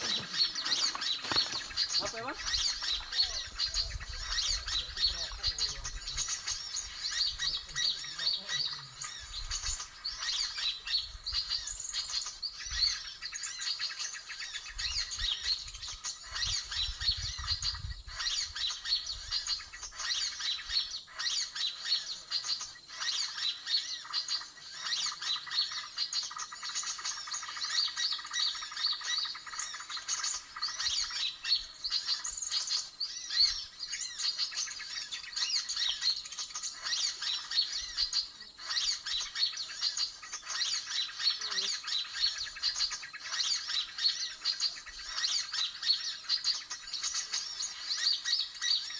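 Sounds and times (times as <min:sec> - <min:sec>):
small birds chirping: 0:00.0 - 0:48.9.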